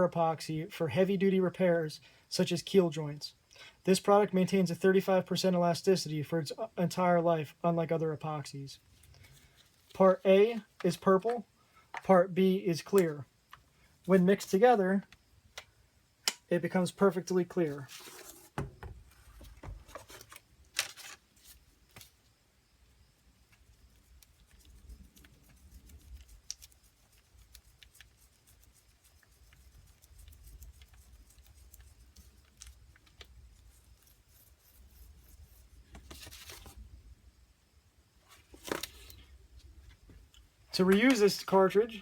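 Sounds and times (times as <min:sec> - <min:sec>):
small clicks and scraping: 0:23.5 - 0:35.1.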